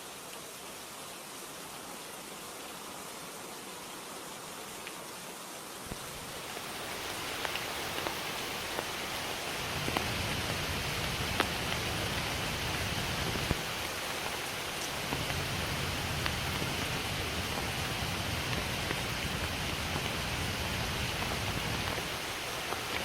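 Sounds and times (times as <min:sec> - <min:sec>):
steady rainfall hiss: 0:00.0 - 0:23.0
raindrops ticking: 0:05.9 - 0:23.0.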